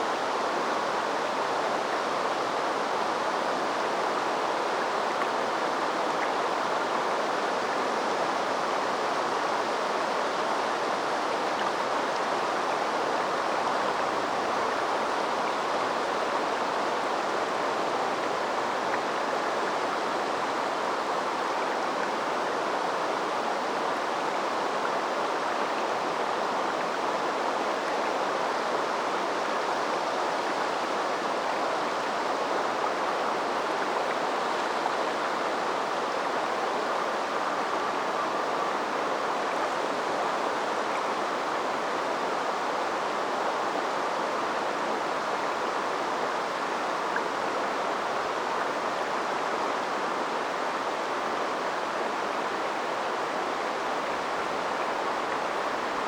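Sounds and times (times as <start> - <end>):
river flowing: 0.0 - 56.0.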